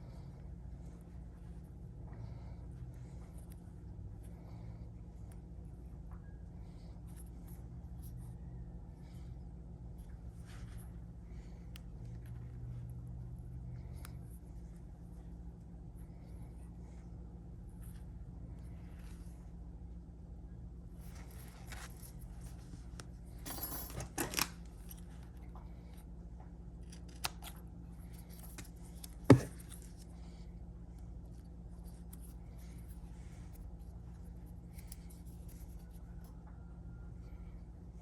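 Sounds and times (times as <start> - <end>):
steady low hum: 0.0 - 38.0
handling scrapes and clicks: 21.0 - 26.1, 26.8 - 36.4.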